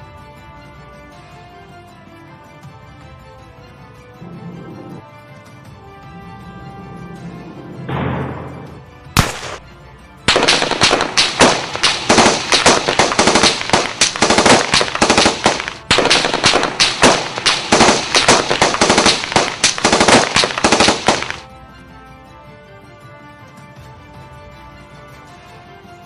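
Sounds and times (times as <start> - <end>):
sharp bangs and crackles: 7.9 - 9.7, 10.3 - 21.5.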